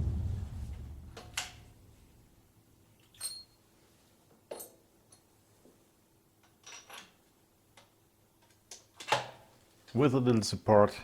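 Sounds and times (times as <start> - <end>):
faint metallic clinks: 3.0 - 3.7, 4.5 - 5.3.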